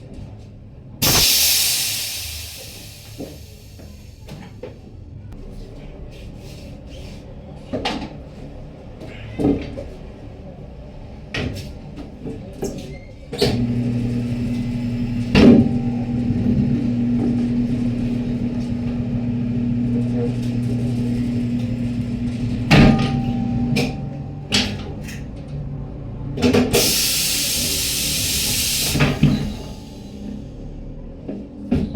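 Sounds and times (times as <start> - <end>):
compressed air hiss: 1.0 - 4.3, 26.8 - 30.5
electric motor humming: 13.6 - 23.7.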